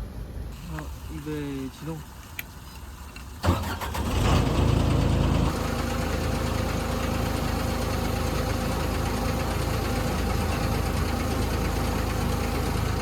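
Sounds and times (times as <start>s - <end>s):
pile driver engine idling: 3.5s - 13.0s.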